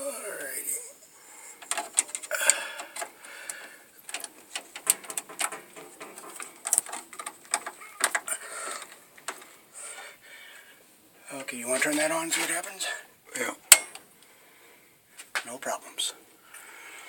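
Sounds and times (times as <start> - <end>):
hand tool clicking and scraping: 1.6 - 9.6.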